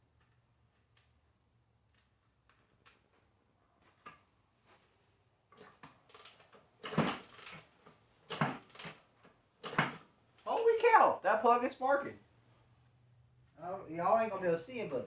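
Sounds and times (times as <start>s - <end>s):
motorcycle kick-starter turning engine over: 6.8s - 7.7s, 8.3s - 9.0s.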